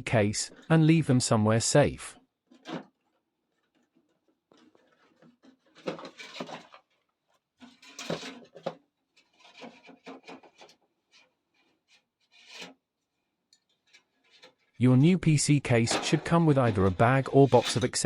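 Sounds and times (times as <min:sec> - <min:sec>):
panels rubbing and scraping: 0:02.5 - 0:18.0.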